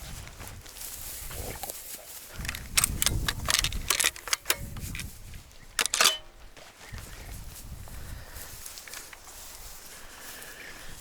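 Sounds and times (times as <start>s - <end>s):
wind rumble on microphone: 0.0s - 4.0s, 4.6s - 5.7s, 6.8s - 8.8s.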